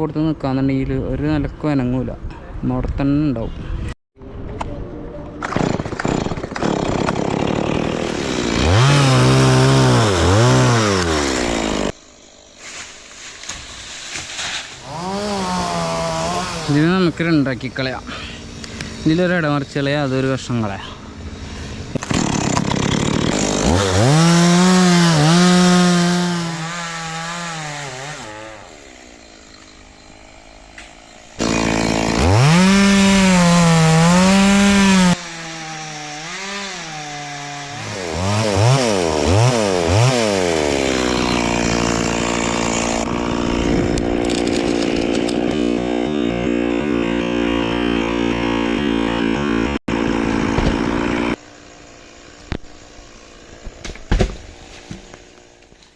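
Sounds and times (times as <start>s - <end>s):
chainsaw revving and cutting: 5.4s - 55.9s.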